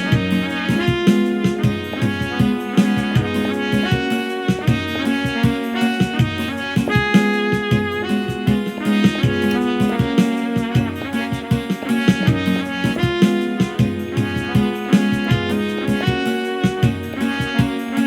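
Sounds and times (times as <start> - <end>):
brass lead melody: 0.0 - 18.0
keyboard chords: 0.0 - 18.0
percussion beat: 0.0 - 18.0.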